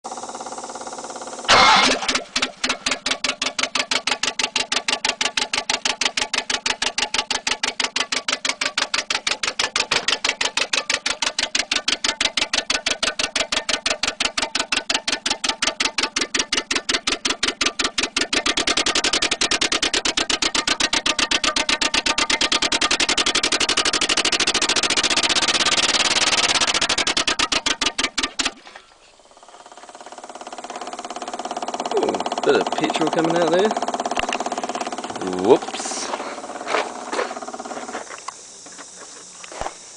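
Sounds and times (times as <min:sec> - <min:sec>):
engine coughing and spluttering: 0:01.5 - 0:21.2.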